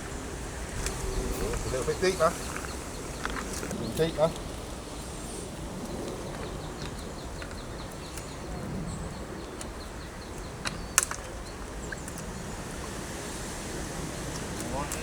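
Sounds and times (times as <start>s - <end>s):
bird twittering: 0.0s - 5.5s.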